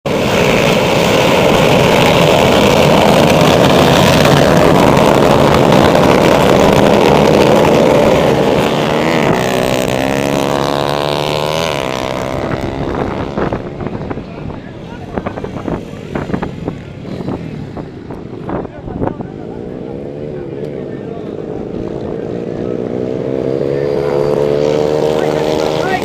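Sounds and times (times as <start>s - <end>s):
racing motorcycle engines: 0.1s - 26.0s
single engine revving: 0.4s - 13.7s, 21.6s - 26.0s.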